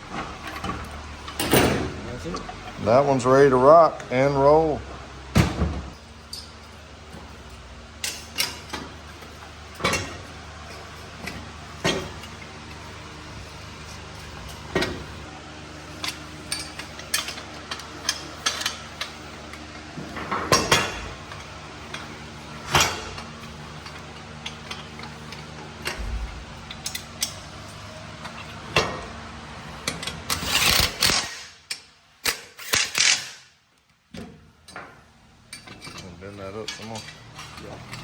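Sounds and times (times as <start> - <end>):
steady low hum: 0.0 - 31.1
metal parts clicking and clinking: 15.9 - 19.6, 29.9 - 33.5.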